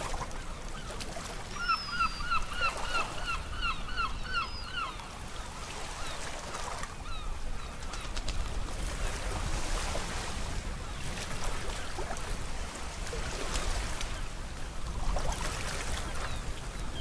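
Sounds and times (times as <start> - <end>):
sea waves rushing: 8.5 - 17.0.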